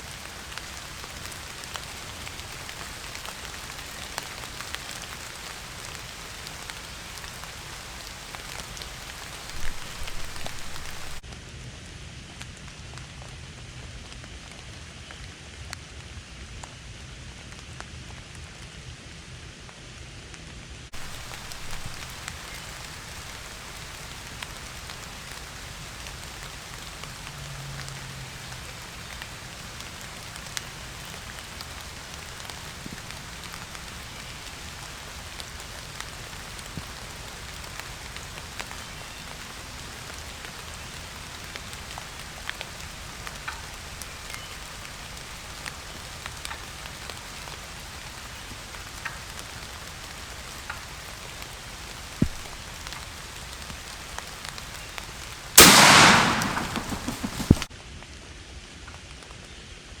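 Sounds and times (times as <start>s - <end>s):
steady rain: 0.0s - 60.0s
drops ticking close by: 55.6s - 57.7s.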